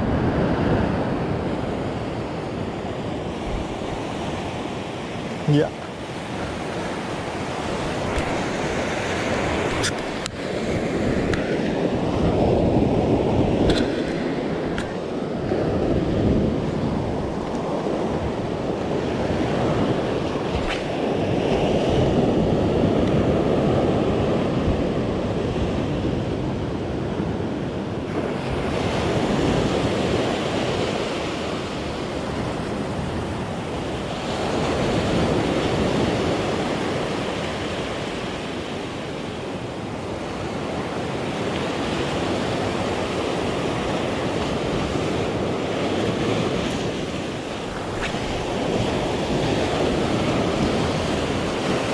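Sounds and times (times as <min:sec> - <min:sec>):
waves breaking on rocky shore: 0:00.0 - 0:26.1, 0:28.1 - 0:51.9
wind buffeting microphone: 0:00.0 - 0:30.7, 0:41.7 - 0:51.9.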